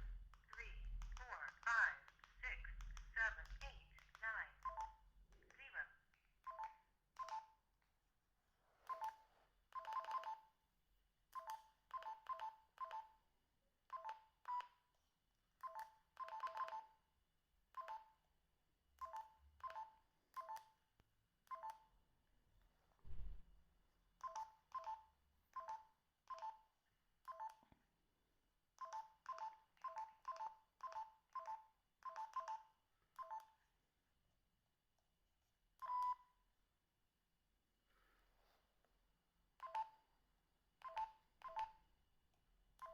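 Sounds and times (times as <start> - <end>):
phone keypad beeps: 3.3 - 5.0, 6.5 - 7.6, 8.9 - 10.5, 11.4 - 13.2, 13.9 - 14.7, 15.6 - 17.0, 17.8 - 18.2, 19.0 - 20.7, 24.2 - 26.7, 27.3 - 27.6, 28.8 - 33.6, 35.8 - 36.3, 39.6 - 40.0, 40.8 - 41.8
low thump: 23.1 - 23.4.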